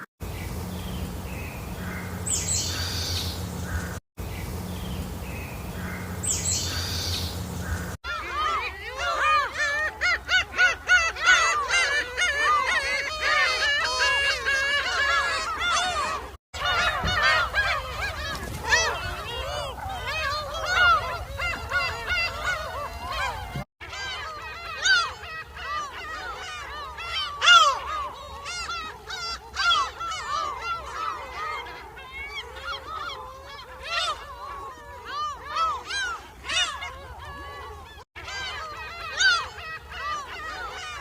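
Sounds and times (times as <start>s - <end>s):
geese honking: 5.7s - 33.2s.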